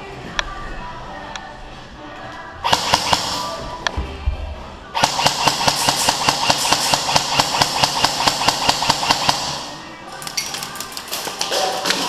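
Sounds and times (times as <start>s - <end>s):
airsoft gun rapid firing: 2.6s - 3.6s, 5.0s - 9.8s.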